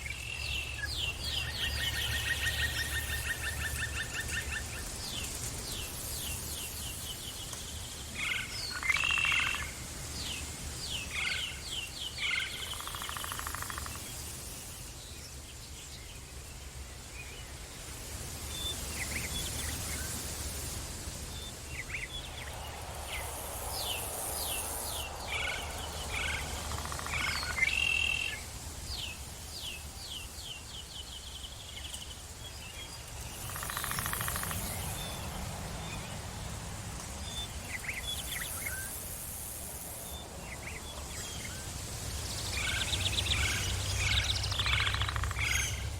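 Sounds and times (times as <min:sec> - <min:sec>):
buzzy croaking calls: 0:12.2 - 0:14.7, 0:21.8 - 0:28.5, 0:33.3 - 0:35.2, 0:42.4 - 0:45.9
birds chirping: 0:18.6 - 0:36.2, 0:37.2 - 0:45.9
steady low rumble: 0:20.6 - 0:27.6.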